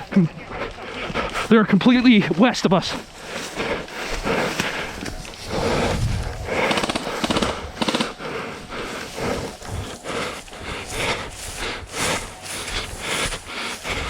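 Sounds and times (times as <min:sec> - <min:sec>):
rustling and hissing: 0:02.9 - 0:14.0
airsoft guns firing bursts: 0:06.5 - 0:08.4.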